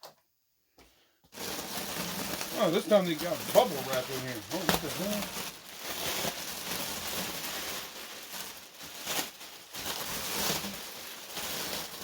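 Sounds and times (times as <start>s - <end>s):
bubble wrap rustling and crinkling: 1.3s - 12.0s.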